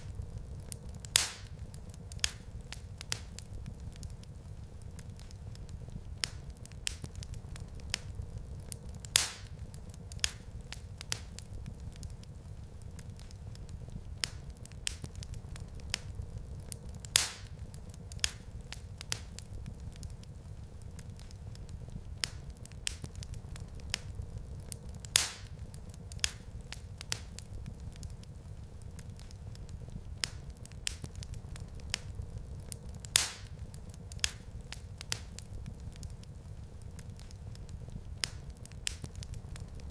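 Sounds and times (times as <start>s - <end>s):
low rumble of flames: 0.0s - 39.9s
wood fire crackling: 0.0s - 39.9s.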